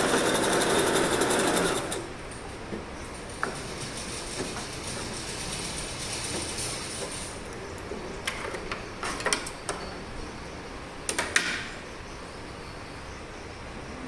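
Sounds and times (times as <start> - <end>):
sewing machine running: 0.0 - 2.3.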